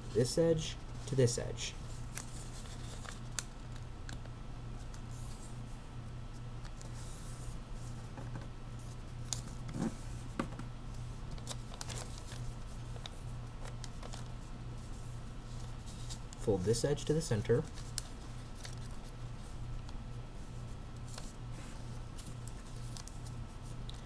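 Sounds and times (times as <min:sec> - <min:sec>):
steady low hum: 0:00.0 - 0:24.0
paper folding and crinkling: 0:01.8 - 0:05.6, 0:11.2 - 0:16.5, 0:17.6 - 0:24.0.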